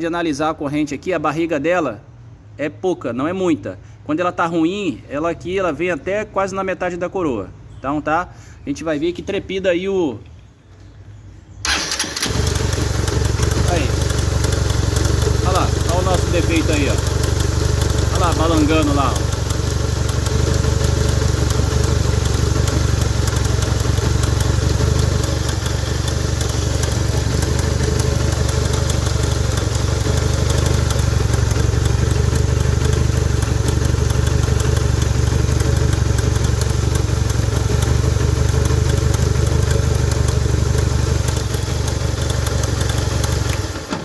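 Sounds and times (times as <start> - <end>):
motorcycle engine idling: 11.6 - 44.0.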